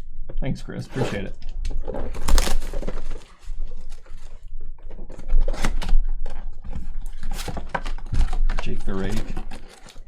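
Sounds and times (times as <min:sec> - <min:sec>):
trading cards clicking and snapping: 0:02.2 - 0:03.0.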